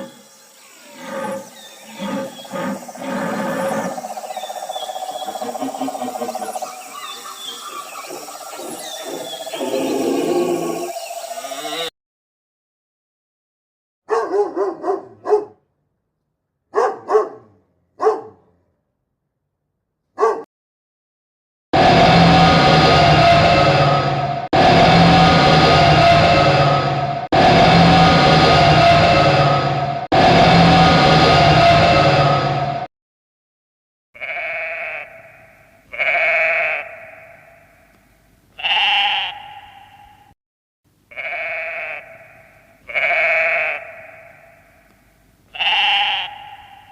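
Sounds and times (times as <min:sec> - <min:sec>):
dog barking: 0:14.1 - 0:15.6, 0:16.7 - 0:18.5, 0:20.2 - 0:20.5
animal bleating: 0:34.2 - 0:37.5, 0:38.6 - 0:39.9, 0:41.1 - 0:44.6, 0:45.6 - 0:46.9.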